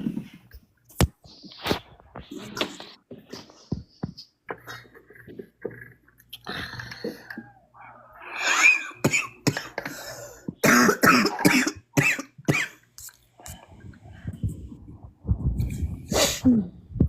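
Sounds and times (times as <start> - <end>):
person coughing: 10.6 - 12.8.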